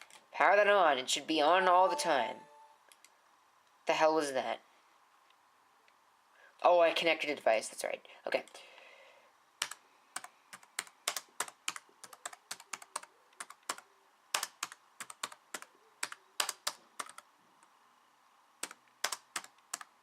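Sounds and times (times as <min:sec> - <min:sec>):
typing on keyboard: 0:09.6 - 0:17.3, 0:18.6 - 0:19.9.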